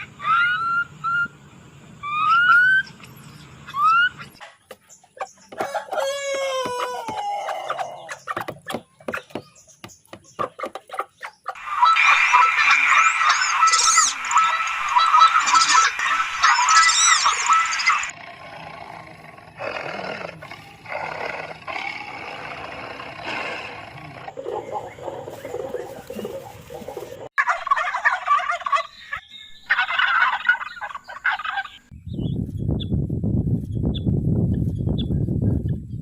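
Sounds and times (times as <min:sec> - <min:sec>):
animal calls: 0:00.0 - 0:01.4, 0:02.0 - 0:04.4, 0:10.4 - 0:31.9
rattling bird-like calls: 0:07.7 - 0:27.7.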